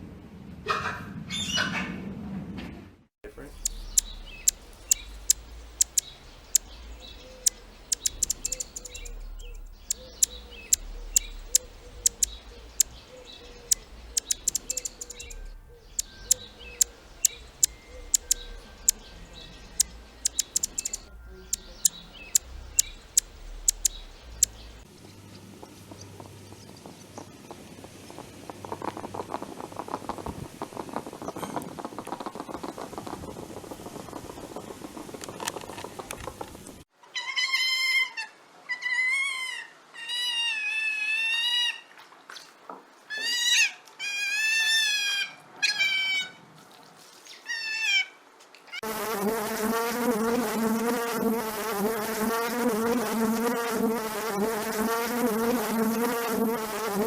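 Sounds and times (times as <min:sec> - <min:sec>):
flying insects buzzing: 0:03.5 - 0:19.1, 0:19.7 - 0:24.8, 0:48.8 - 0:57.0
high wavering animal calls: 0:03.6 - 0:19.0.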